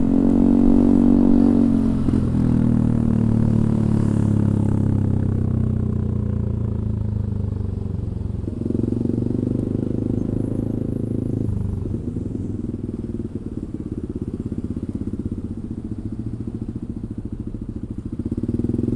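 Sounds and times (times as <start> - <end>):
scooter engine revving and idling: 0.0 - 18.9.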